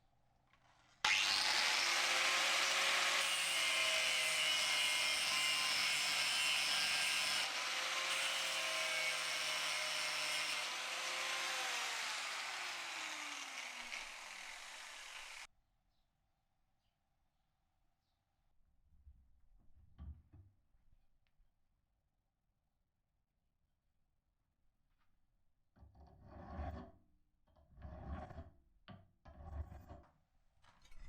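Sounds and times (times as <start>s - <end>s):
power tool working steel: 1.1s - 15.5s.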